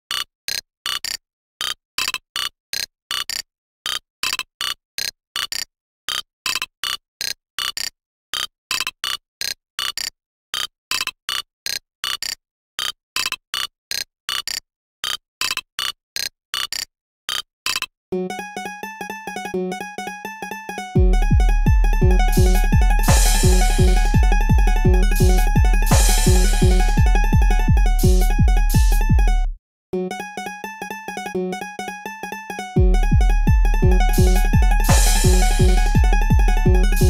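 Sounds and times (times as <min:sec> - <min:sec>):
melodic alarm tone: 0:18.2 - 0:37.0.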